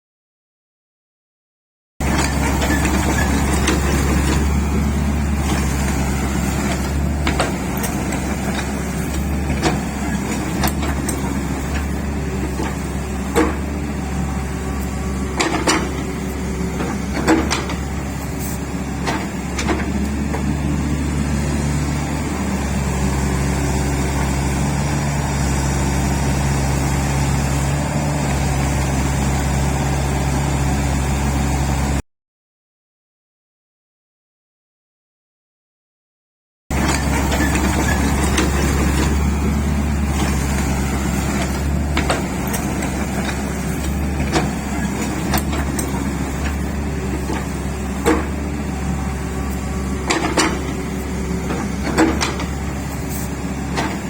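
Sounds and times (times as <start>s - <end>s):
excavator diesel engine running: 2.0s - 32.0s, 36.7s - 54.0s.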